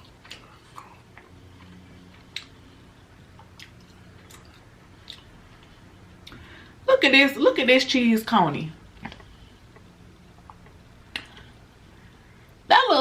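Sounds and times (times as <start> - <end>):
chewing food: 0.0 - 2.6, 3.3 - 6.4
wet mouth clicks: 10.4 - 11.5.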